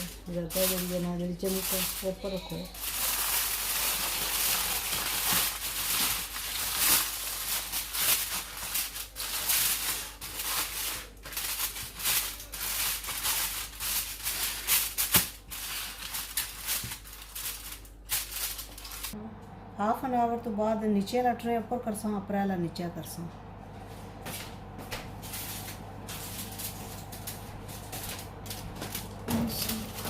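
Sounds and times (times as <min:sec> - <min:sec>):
material crinkling and rustling: 0:00.0 - 0:19.2
low electrical hum: 0:00.0 - 0:30.0.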